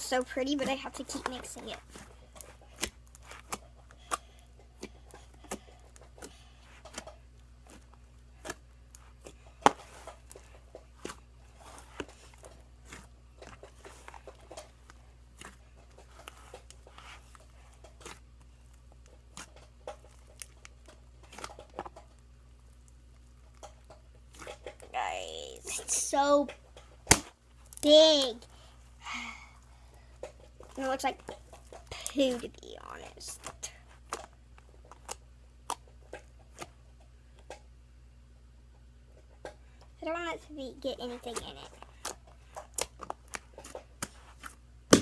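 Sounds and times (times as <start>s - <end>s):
steady low hum: 0.0s - 45.0s.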